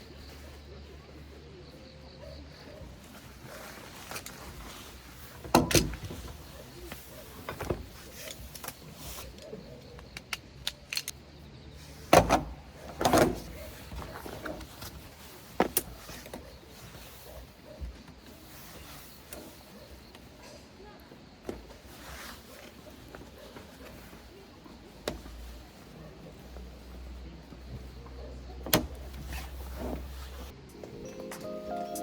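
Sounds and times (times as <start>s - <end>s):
objects clicking and clinking: 8.6s - 11.2s.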